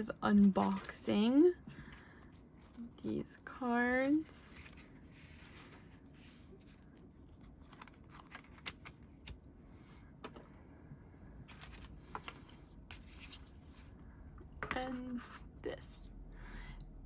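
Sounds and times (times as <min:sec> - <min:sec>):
paper cards rustling: 0:00.0 - 0:02.9, 0:03.8 - 0:09.4, 0:11.4 - 0:13.9.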